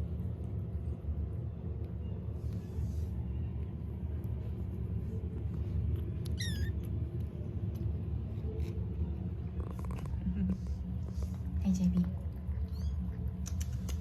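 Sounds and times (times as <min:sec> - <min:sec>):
kitten purring: 0:02.6 - 0:14.0
kitten squeak: 0:06.2 - 0:06.9, 0:12.5 - 0:14.0.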